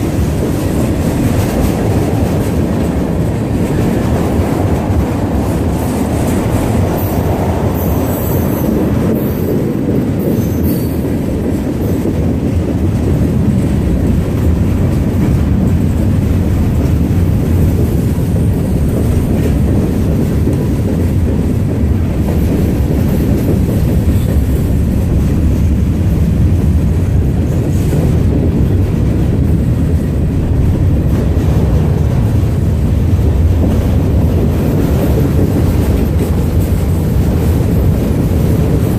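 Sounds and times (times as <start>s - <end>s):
train wheels rumbling on rails: 0.0s - 38.9s.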